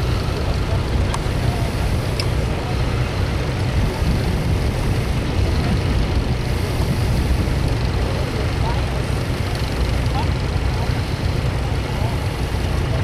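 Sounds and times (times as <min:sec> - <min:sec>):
tractor engine rumbling: 0:00.0 - 0:13.0.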